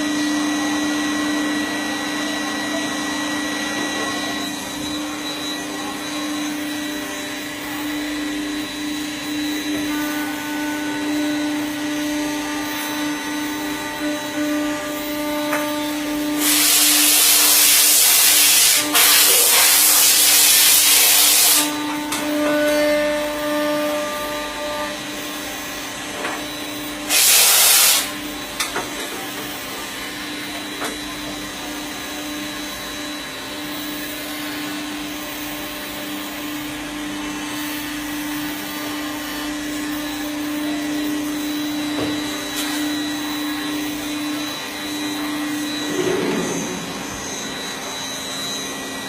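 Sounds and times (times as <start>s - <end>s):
cnc machine motor hum: 0.0s - 49.0s
loud rushing hiss: 16.4s - 21.7s, 27.1s - 28.1s.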